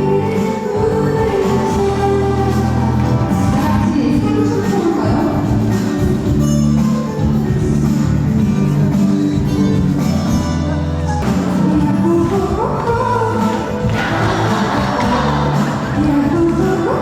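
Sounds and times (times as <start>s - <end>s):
live band playing pop: 0.0s - 10.6s, 11.2s - 17.0s.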